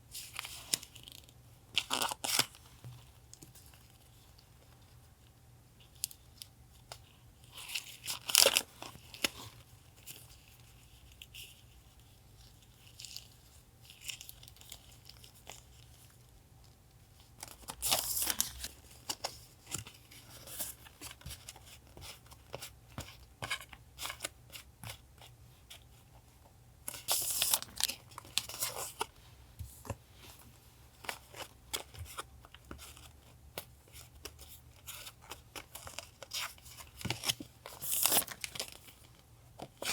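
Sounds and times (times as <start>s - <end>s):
paper rustling and crinkling: 26.8s - 39.9s.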